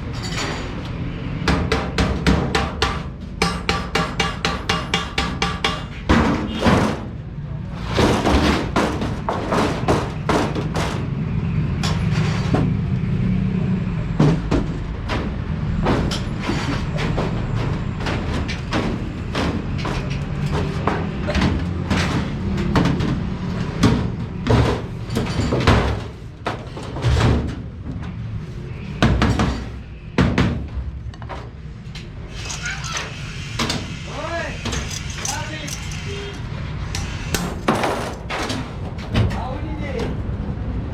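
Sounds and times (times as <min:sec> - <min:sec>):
sheet metal bangs and knocks: 0:01.4 - 0:07.3, 0:07.9 - 0:11.2, 0:14.2 - 0:27.9, 0:29.0 - 0:31.5.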